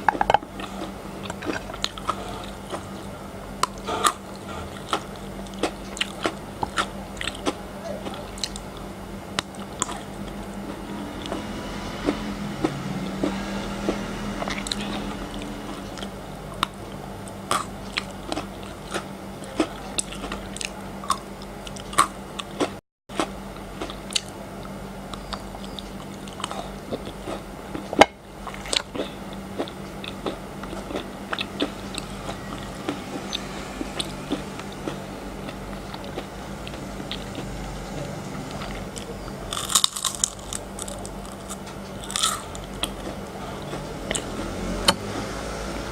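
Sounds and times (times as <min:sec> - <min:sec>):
chewing: 0:00.1 - 0:08.8, 0:09.4 - 0:45.3
chocolate cracking: 0:39.5 - 0:43.0.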